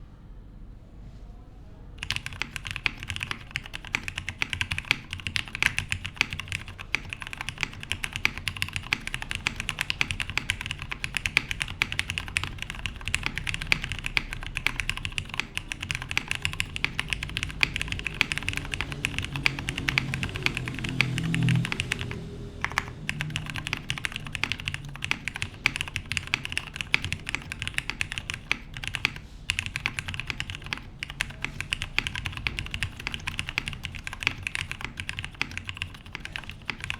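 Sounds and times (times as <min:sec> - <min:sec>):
mechanical keyboard typing: 0:02.0 - 0:36.9.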